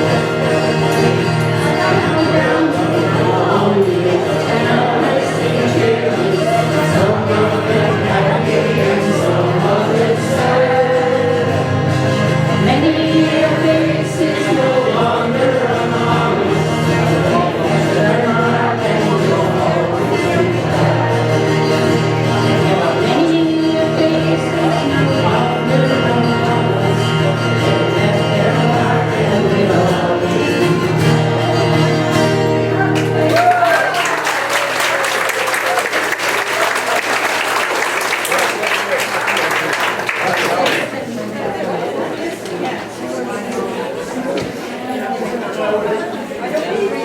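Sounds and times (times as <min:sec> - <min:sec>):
people singing a church song: 0:00.0 - 0:32.7.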